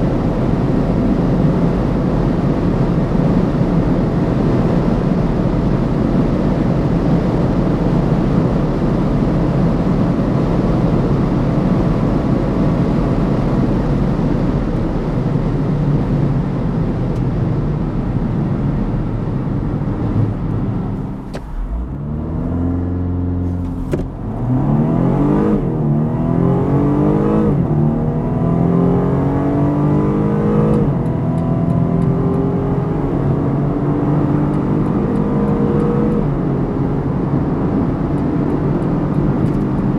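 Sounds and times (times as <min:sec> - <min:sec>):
wind and road noise: 0:00.0 - 0:39.9
car engine accelerating: 0:19.4 - 0:39.9.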